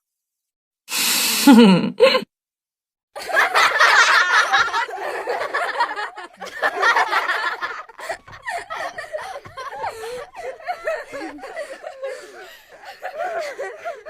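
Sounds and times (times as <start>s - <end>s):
person laughing: 1.3s - 2.3s, 3.8s - 14.0s.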